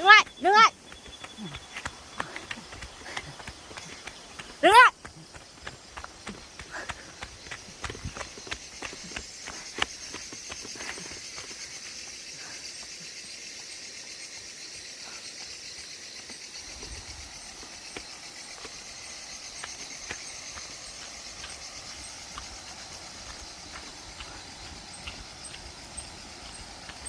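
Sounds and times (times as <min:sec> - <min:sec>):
insects chirring: 0:00.0 - 0:27.0.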